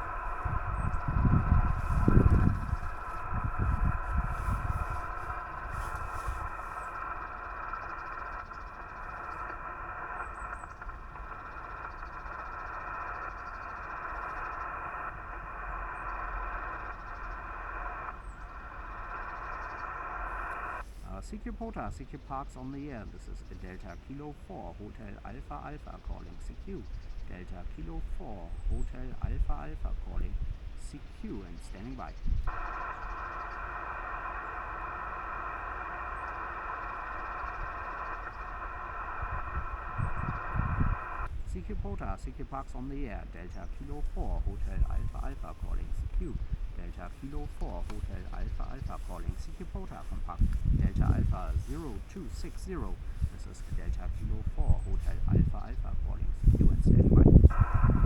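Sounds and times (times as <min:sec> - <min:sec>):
low rumble: 0:00.0 - 0:21.7
radio receiver hiss: 0:00.0 - 0:58.0.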